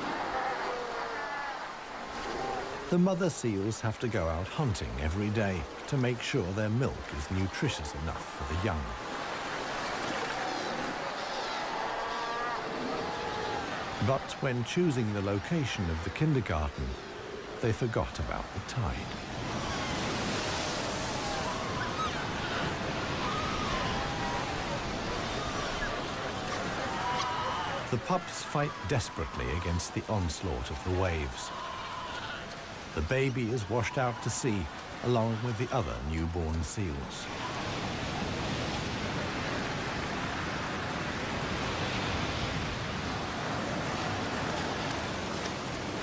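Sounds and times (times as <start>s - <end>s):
surf washing up the shore: 0.0s - 46.0s
seal pups calling: 21.2s - 28.0s.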